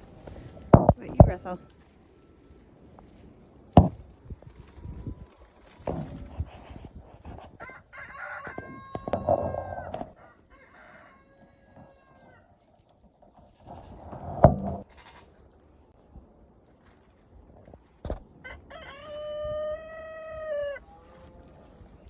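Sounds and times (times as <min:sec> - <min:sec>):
rustling and shuffling: 0:00.0 - 0:10.2, 0:20.8 - 0:22.0
rooster crowing: 0:07.6 - 0:12.5, 0:18.4 - 0:21.6.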